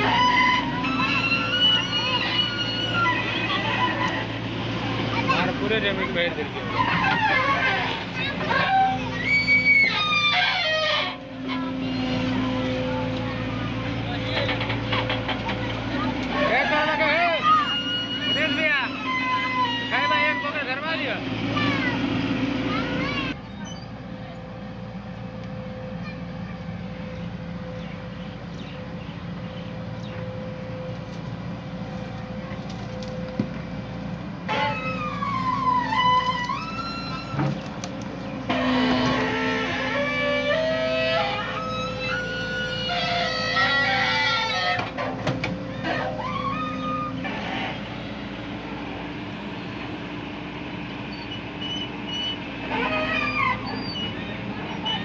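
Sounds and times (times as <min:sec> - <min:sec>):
high whining tone: 0:00.0 - 0:23.4, 0:25.4 - 0:49.9
excavator diesel engine running: 0:00.0 - 0:55.0
falling pitched call: 0:06.7 - 0:11.2.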